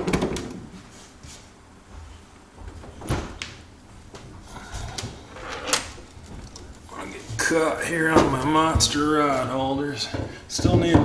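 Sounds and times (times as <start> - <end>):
knocks and bumps on a boat: 7.2 - 11.0.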